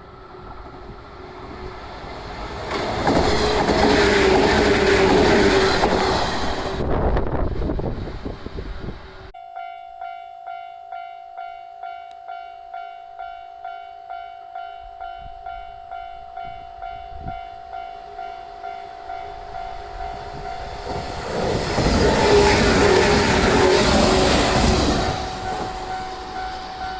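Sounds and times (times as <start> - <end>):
electric train passing: 0.0 - 26.9
level crossing bell ringing: 9.4 - 19.7.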